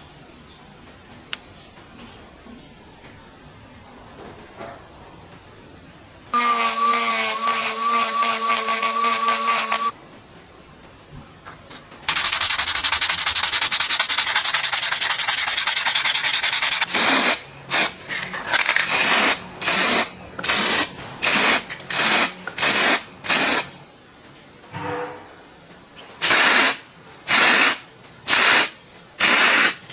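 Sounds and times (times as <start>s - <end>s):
spray hissing: 6.4s - 9.9s, 12.1s - 18.0s, 18.9s - 23.7s, 26.2s - 29.9s.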